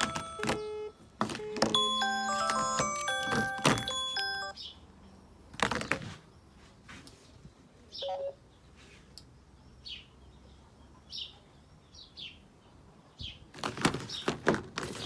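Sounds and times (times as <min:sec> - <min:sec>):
birdsong ringtone chirps: 0:00.0 - 0:04.8, 0:08.0 - 0:08.4.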